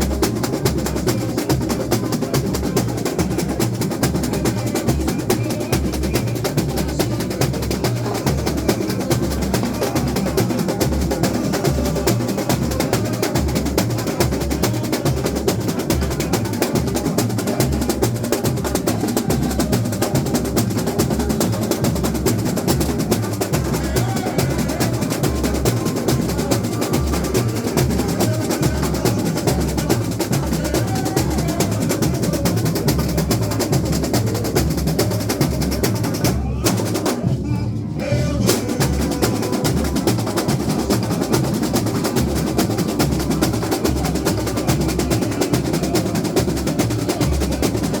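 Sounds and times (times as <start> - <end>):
bass drums beating: 0.0 - 48.0
snare drums and hand percussion: 0.0 - 48.0.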